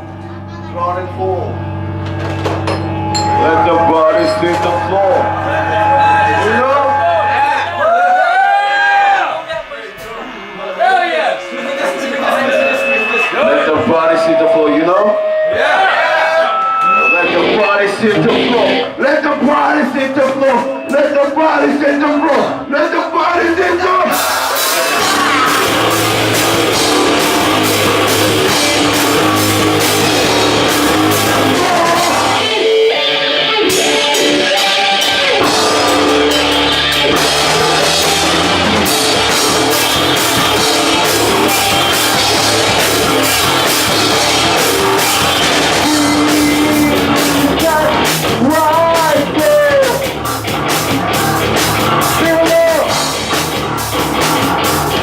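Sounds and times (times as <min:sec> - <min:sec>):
electric guitar: 0:00.0 - 0:22.7, 0:24.0 - 0:55.0
drums: 0:00.0 - 0:55.0
person singing: 0:31.2 - 0:36.2, 0:45.0 - 0:50.0.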